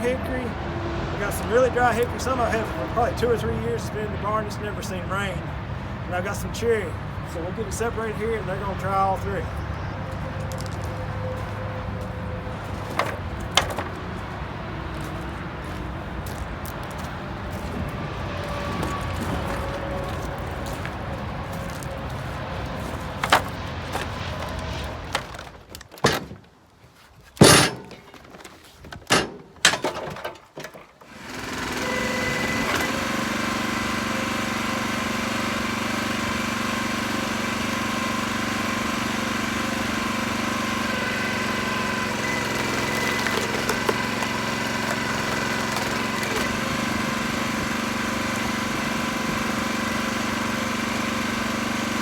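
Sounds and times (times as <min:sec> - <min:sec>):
vehicle engine humming: 0:00.0 - 0:25.7, 0:31.1 - 0:52.0
sharp knocks and clunks: 0:12.8 - 0:14.0, 0:23.2 - 0:24.1, 0:25.2 - 0:26.5, 0:27.4 - 0:30.9.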